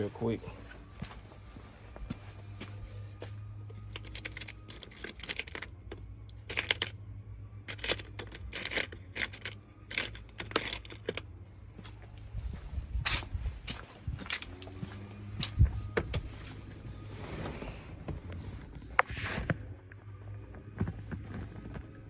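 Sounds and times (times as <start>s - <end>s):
steady low hum: 0.0s - 22.0s
metal tools clinking: 3.8s - 5.7s, 7.7s - 11.2s, 13.1s - 15.6s.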